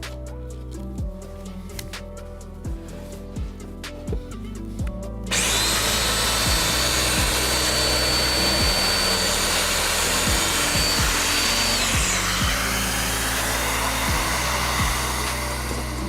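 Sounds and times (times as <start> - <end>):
joiner motor whining: 5.3 - 16.0.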